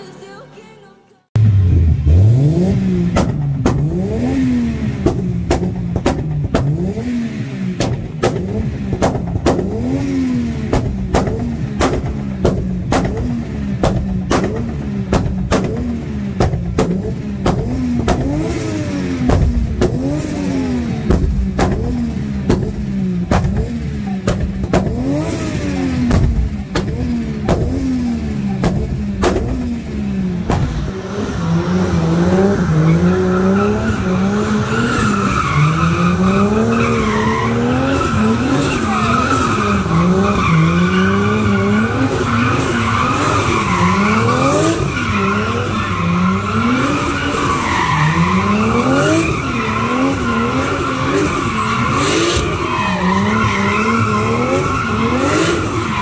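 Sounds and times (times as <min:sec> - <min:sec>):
car engine revving: 0:01.4 - 0:56.0
sharp cracks: 0:10.7 - 0:25.4, 0:28.6 - 0:29.7.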